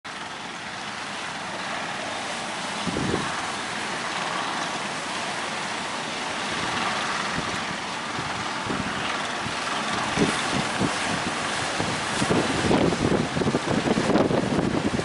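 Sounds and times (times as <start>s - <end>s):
strong wind on microphone: 2.6s - 4.6s, 5.3s - 15.0s.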